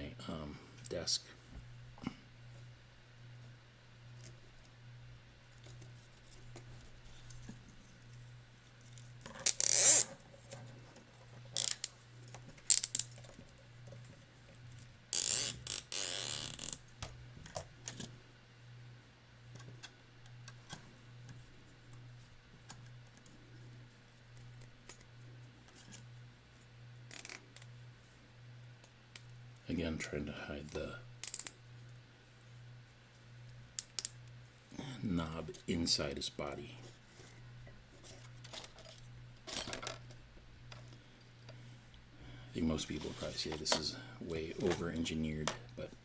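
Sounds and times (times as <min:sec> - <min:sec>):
zip tie ratcheting zip: 0:09.4 - 0:10.1, 0:11.6 - 0:11.9, 0:12.7 - 0:13.1, 0:15.1 - 0:16.8, 0:27.1 - 0:27.7.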